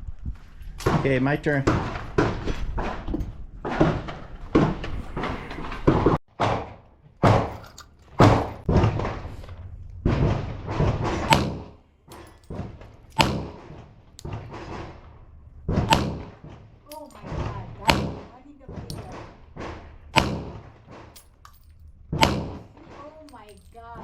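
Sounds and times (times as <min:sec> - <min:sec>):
handgun shots with echo: 0:11.2 - 0:11.7, 0:13.2 - 0:13.6, 0:15.8 - 0:16.4, 0:17.8 - 0:18.3, 0:20.1 - 0:20.6, 0:22.2 - 0:22.6.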